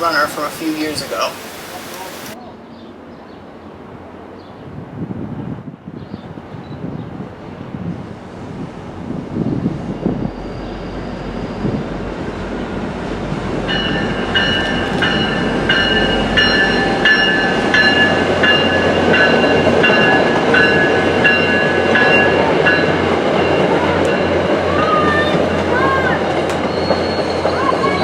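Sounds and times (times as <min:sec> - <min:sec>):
diesel train rumbling: 0:00.0 - 0:05.8, 0:06.4 - 0:28.0
bell ringing: 0:13.7 - 0:24.4.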